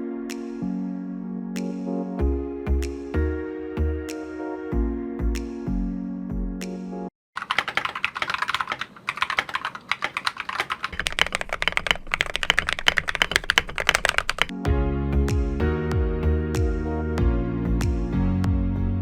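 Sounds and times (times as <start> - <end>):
music: 0.0 - 7.1, 14.5 - 19.0
fast mechanical keyboard typing: 7.4 - 14.5.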